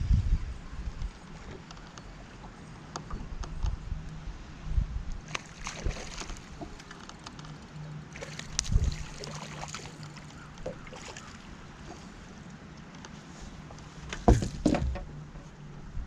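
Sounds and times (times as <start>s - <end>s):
waves slapping against boat hull: 5.2s - 12.2s, 12.8s - 15.3s.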